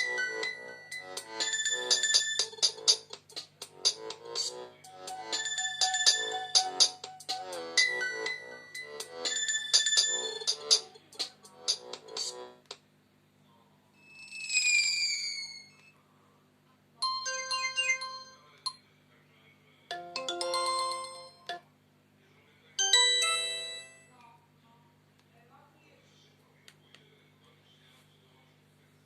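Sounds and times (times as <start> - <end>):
electronic ringtone melody: 0.0 - 3.2, 3.8 - 12.3, 17.0 - 18.5, 19.9 - 21.6, 22.8 - 24.1.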